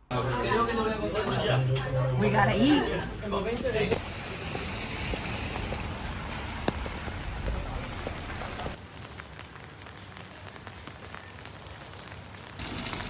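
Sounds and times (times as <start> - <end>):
rain on hard surfaces: 2.4 - 13.0
raindrops ticking close by: 3.9 - 13.0.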